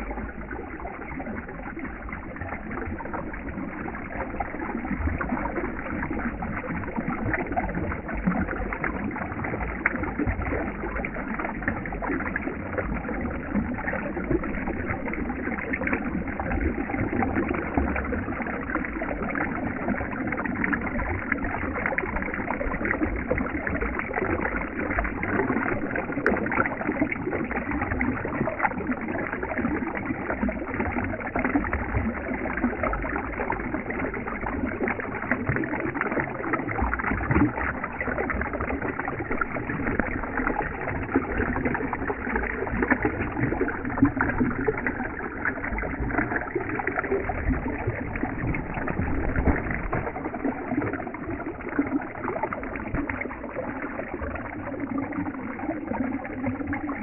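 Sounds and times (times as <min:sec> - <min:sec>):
water rushing: 0:35.9 - 0:57.0.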